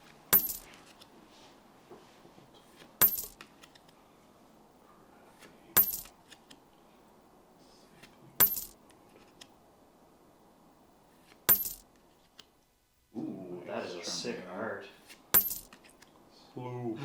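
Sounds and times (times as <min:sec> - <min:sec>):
trading cards clacking: 0:02.8 - 0:03.9, 0:05.8 - 0:06.6, 0:08.0 - 0:09.5, 0:11.2 - 0:12.4, 0:15.1 - 0:16.0.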